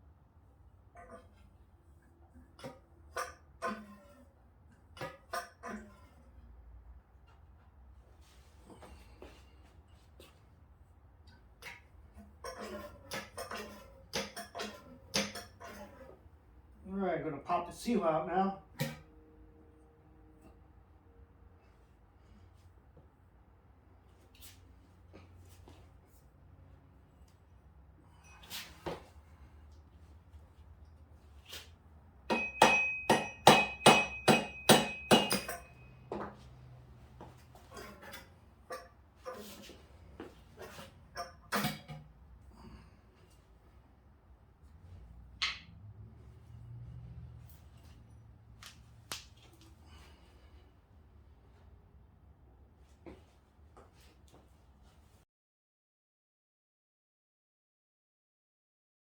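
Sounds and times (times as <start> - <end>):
metal-on-metal ringing strikes: 32.3 - 36.2.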